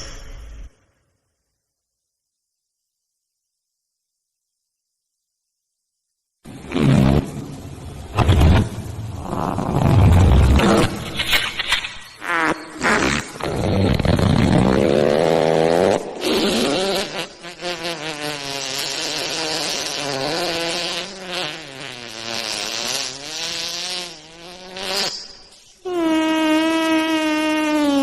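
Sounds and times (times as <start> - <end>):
wet fart sounds: 6.5 - 28.0.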